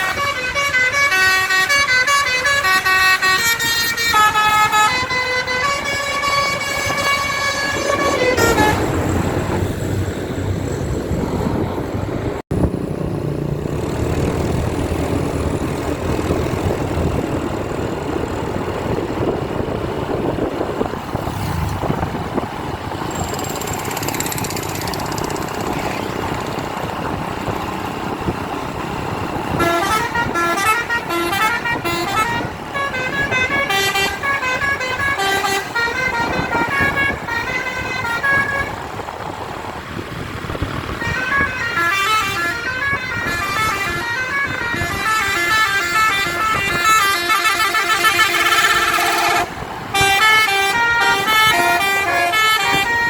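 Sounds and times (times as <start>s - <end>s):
musical bus horn tune: 0.0s - 9.5s, 29.5s - 38.8s, 41.0s - 53.0s
bus noise: 0.0s - 53.0s.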